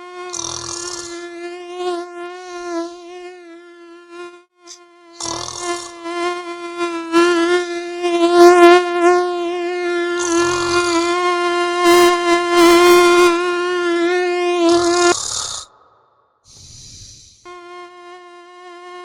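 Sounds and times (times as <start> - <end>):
mosquito whining: 0.0 - 3.0, 4.7 - 19.0
breathy snore: 0.4 - 1.1, 5.2 - 5.9, 14.8 - 17.2.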